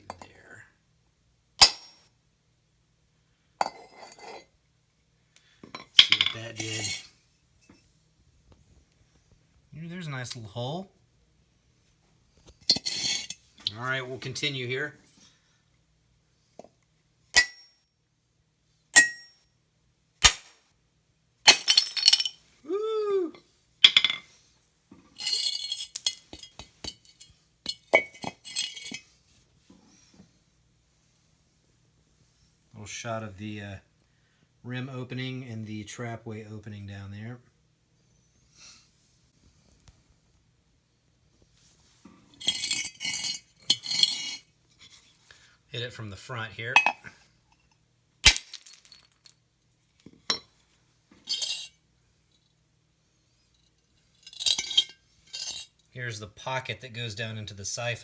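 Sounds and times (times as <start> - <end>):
porcelain shards clattering: 1.6 - 2.0, 5.8 - 7.1, 12.7 - 13.4, 21.5 - 22.4, 23.8 - 24.3, 25.2 - 29.0, 42.4 - 44.4, 48.2 - 49.4, 51.3 - 51.7, 54.2 - 55.7
hammer striking porcelain: 19.0 - 19.3.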